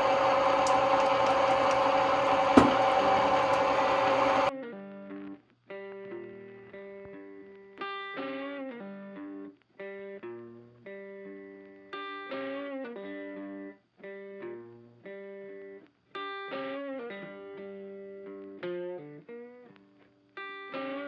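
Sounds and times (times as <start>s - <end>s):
guitar instrumental music: 4.6s - 21.0s.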